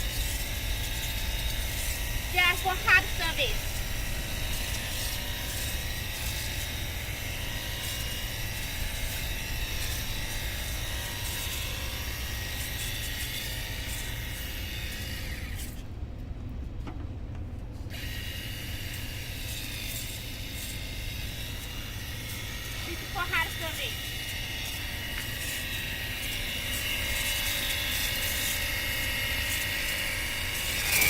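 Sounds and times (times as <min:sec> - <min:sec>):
pressure washer motor whining: 0:00.0 - 0:15.8, 0:17.8 - 0:31.0
water jet spraying hard surface: 0:22.7 - 0:24.0.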